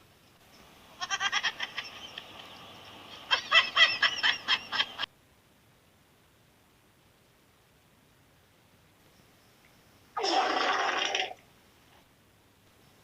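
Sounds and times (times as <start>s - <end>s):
rapid bird-like squawking calls: 10.2s - 11.4s.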